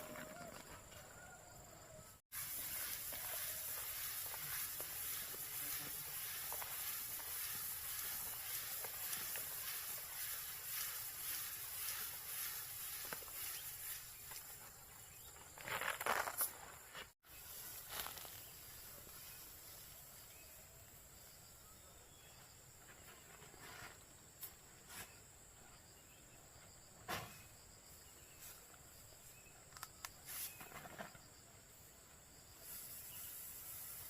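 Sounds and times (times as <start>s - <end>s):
high insect drone: 2.4s - 13.6s.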